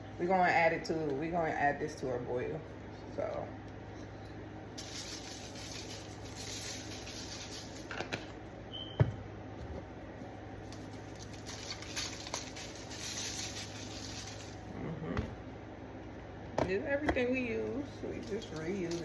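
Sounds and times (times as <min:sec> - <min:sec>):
steady low hum: 0:00.0 - 0:19.0
rustling and scratching in a pan: 0:04.8 - 0:08.4, 0:10.6 - 0:14.8, 0:18.0 - 0:19.0.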